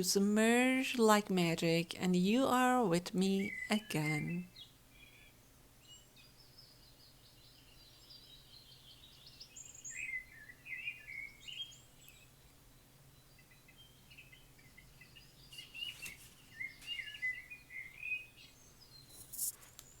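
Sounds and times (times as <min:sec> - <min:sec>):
faint steady hum: 0:00.0 - 0:20.0
songbirds chirping and warbling: 0:00.2 - 0:20.0.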